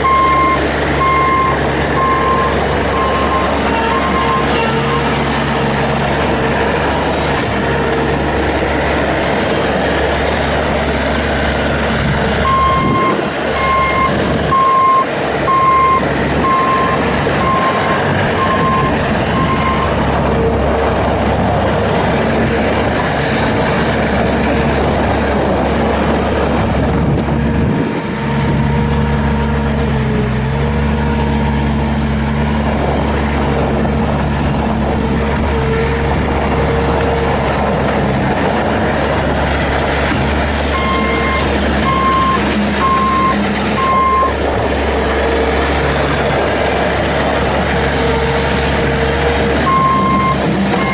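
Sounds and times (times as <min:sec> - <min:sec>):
backup alarm beeping: 0:00.0 - 0:04.5, 0:12.4 - 0:19.9, 0:40.8 - 0:44.4, 0:49.7 - 0:50.9
diesel engine running: 0:00.0 - 0:50.9.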